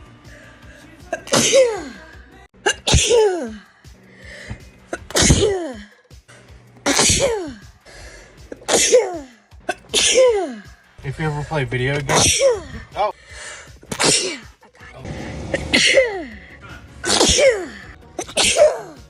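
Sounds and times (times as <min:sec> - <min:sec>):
person sneezing: 0:01.1 - 0:03.6, 0:04.9 - 0:05.9, 0:06.8 - 0:07.7, 0:08.5 - 0:10.7, 0:12.1 - 0:12.7, 0:13.9 - 0:14.5, 0:17.0 - 0:19.0.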